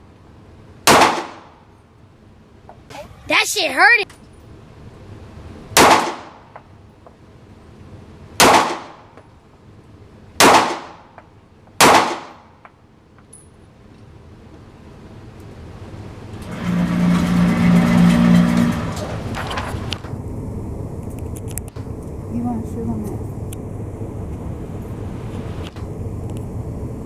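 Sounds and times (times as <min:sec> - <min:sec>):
low steady hum: 0:00.0 - 0:27.0
single gunshots: 0:00.8 - 0:01.6, 0:05.8 - 0:06.5, 0:08.4 - 0:09.0, 0:10.4 - 0:11.1, 0:11.8 - 0:12.5.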